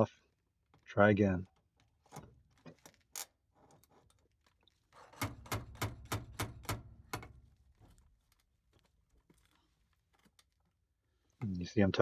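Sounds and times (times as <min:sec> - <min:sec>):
sharp metal knocks: 0:05.2 - 0:07.6.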